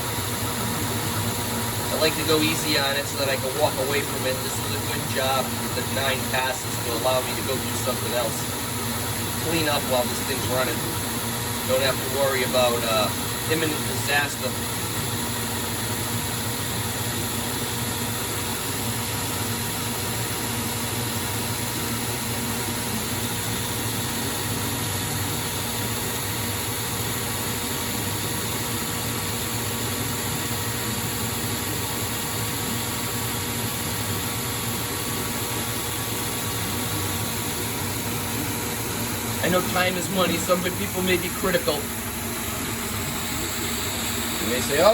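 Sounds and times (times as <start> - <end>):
lathe cutting steel: 0.0 - 15.7, 35.2 - 44.9.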